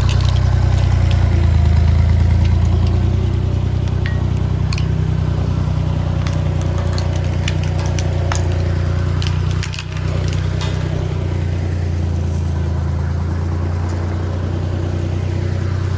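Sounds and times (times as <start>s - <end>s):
sharp cracks and snaps: 0.0s - 12.5s
road roller engine running: 0.0s - 15.9s.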